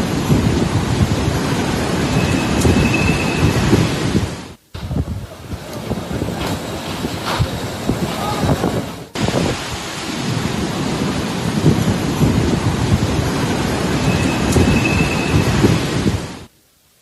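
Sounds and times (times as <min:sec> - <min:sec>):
wind gusts buffeting microphone: 0:00.0 - 0:16.5
heavy rain: 0:00.0 - 0:17.0.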